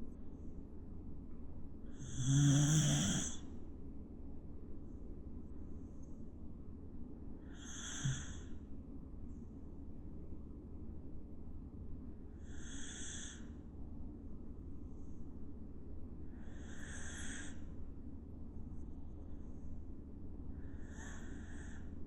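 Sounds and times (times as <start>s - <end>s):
dog snoring: 1.9s - 3.4s, 7.5s - 8.5s, 12.4s - 13.4s, 16.4s - 17.6s.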